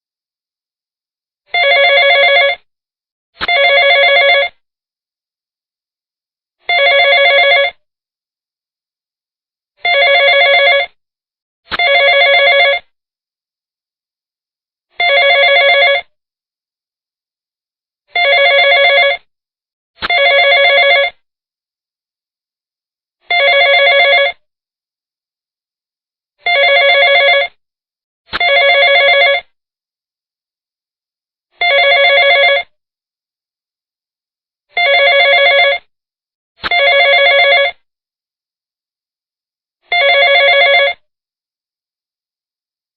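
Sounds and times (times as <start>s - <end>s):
telephone ringing: 1.5s - 2.7s, 3.4s - 4.6s, 6.7s - 7.8s, 9.8s - 11.0s, 11.7s - 12.9s, 15.0s - 16.1s, 18.1s - 19.3s, 20.0s - 21.2s, 23.3s - 24.4s, 26.4s - 27.6s, 28.4s - 29.5s, 31.6s - 32.7s, 34.8s - 35.9s, 36.6s - 37.9s, 39.9s - 41.0s.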